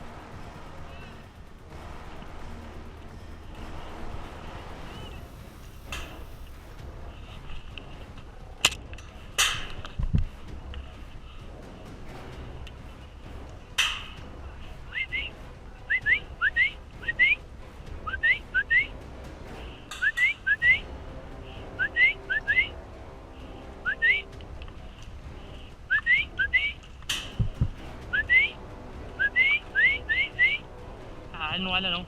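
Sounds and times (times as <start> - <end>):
bird whistling rising notes: 4.8 - 6.4, 14.9 - 17.4, 18.0 - 19.0, 19.9 - 21.0, 21.6 - 22.8, 23.7 - 24.3, 25.9 - 26.8, 28.1 - 30.7.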